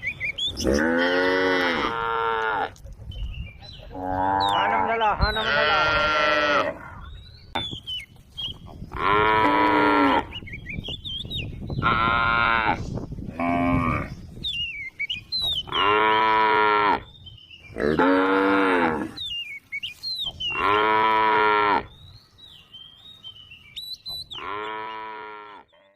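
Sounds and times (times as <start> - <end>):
cows mooing: 0.6 - 2.8, 3.9 - 7.1, 8.9 - 10.4, 15.6 - 17.1, 17.8 - 19.2, 20.5 - 21.9, 24.3 - 25.9.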